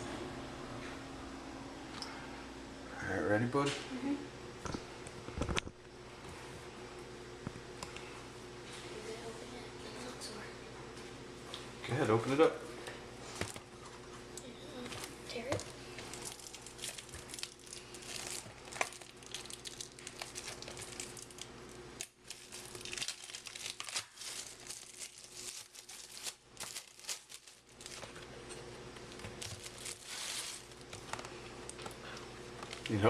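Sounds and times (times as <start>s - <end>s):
plastic wrapping tearing and crinkling: 15.0s - 28.3s, 29.0s - 31.8s.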